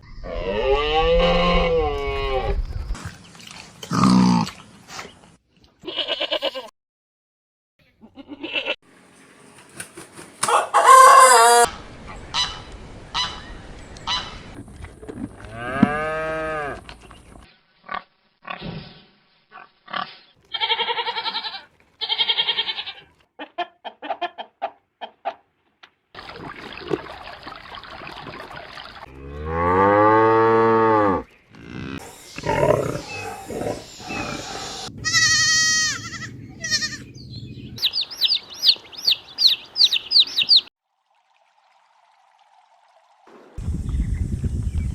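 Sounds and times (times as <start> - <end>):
chickens clucking: 9.8 - 11.7, 23.4 - 25.5, 37.8 - 40.6
rooster crowing: 10.4 - 11.7.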